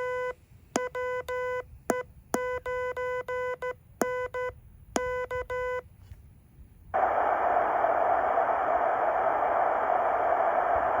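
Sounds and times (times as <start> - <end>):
radio receiver static hiss: 7.0 - 11.0.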